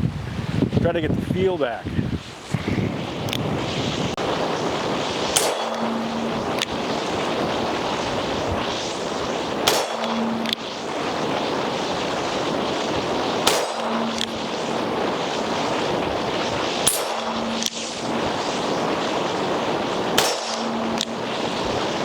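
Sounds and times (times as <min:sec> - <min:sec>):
wind noise on microphone: 0:00.0 - 0:22.0
sharp click: 0:03.3 - 0:03.5, 0:16.9 - 0:17.9, 0:20.2 - 0:21.2
revolver shots: 0:09.6 - 0:10.6, 0:13.4 - 0:15.7.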